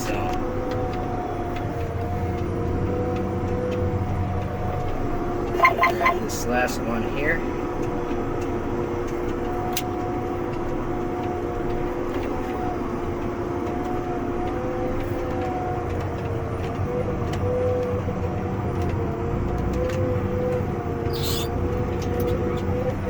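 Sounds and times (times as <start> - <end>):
wavering engine whine: 0.0 - 8.9
tractor diesel engine rumbling: 0.0 - 23.0.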